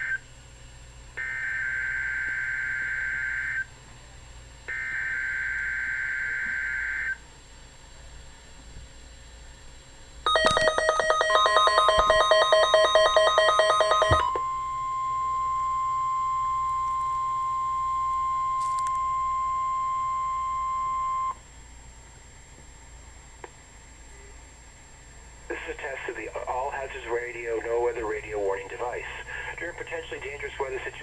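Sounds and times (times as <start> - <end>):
pulsing electronic alarm: 1.2 - 3.7, 4.7 - 7.2, 10.3 - 21.4
steady high alarm tone: 1.2 - 3.7, 4.7 - 7.2, 10.3 - 21.4.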